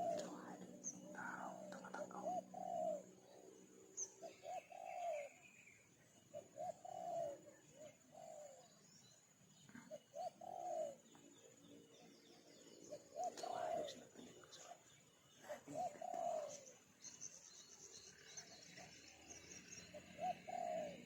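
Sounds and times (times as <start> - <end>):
dove cooing: 0.0 - 3.5, 4.2 - 5.6, 6.3 - 8.8, 9.6 - 11.1, 12.8 - 16.8, 19.9 - 21.0
small birds chirping: 0.0 - 21.0.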